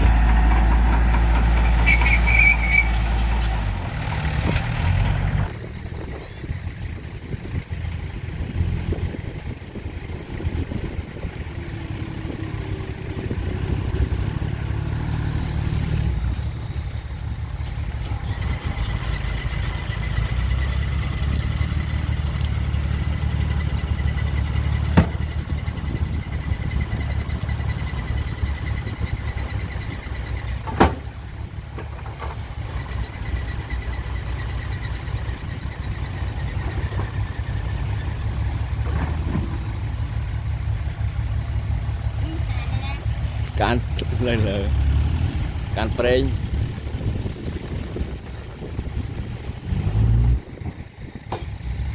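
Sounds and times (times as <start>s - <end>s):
diesel engine rumbling: 0.0s - 51.9s
sharp knocks: 24.9s - 25.4s.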